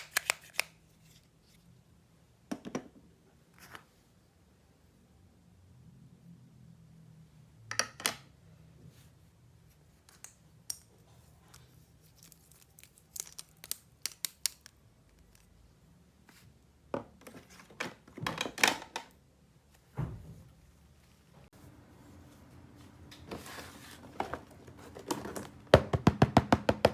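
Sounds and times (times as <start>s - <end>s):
plastic pieces clicking: 0.0s - 0.7s, 12.2s - 15.5s
packaging crinkling and tearing: 12.0s - 15.6s.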